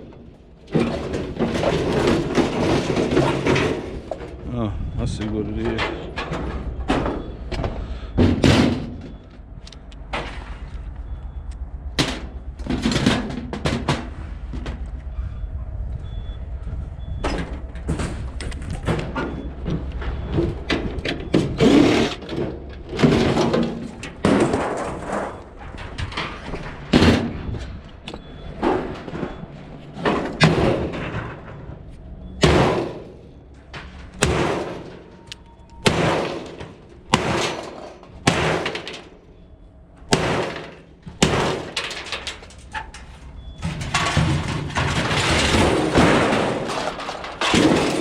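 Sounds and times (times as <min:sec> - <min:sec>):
sheet metal clanking: 0:32.4 - 0:39.4, 0:40.1 - 0:48.0.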